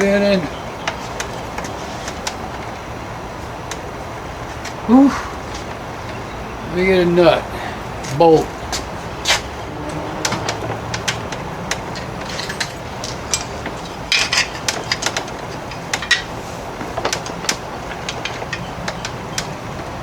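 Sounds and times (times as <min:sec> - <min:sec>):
hand tools clicking and knocking: 0:00.0 - 0:03.9, 0:08.0 - 0:20.0.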